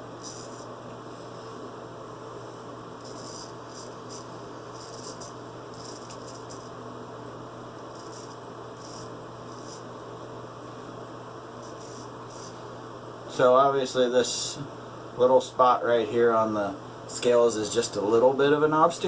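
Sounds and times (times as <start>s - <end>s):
steady electrical hum: 0.0s - 19.0s
razor scraping stubble: 0.2s - 0.7s, 3.0s - 6.8s, 7.9s - 9.9s, 11.6s - 12.6s.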